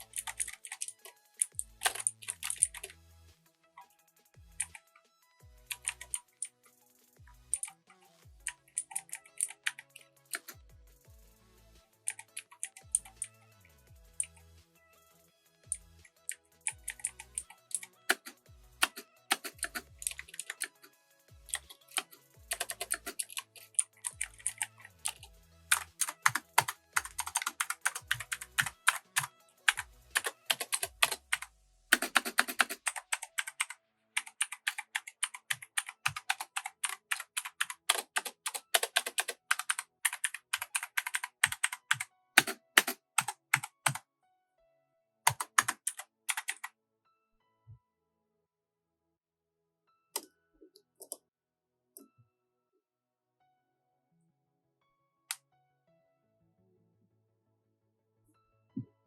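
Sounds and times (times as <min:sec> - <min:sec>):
mechanical keyboard typing: 0:00.0 - 0:03.0, 0:04.6 - 0:04.9, 0:05.7 - 0:06.5, 0:07.5 - 0:07.8, 0:08.4 - 0:10.6, 0:12.0 - 0:13.4, 0:16.1 - 0:20.9, 0:21.5 - 0:44.0, 0:45.3 - 0:46.7
background music: 0:00.0 - 0:48.0.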